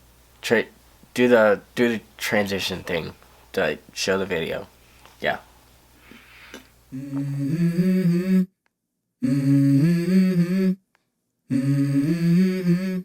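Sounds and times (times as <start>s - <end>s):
person humming a melody: 6.9s - 8.6s, 9.2s - 10.8s, 11.5s - 13.0s.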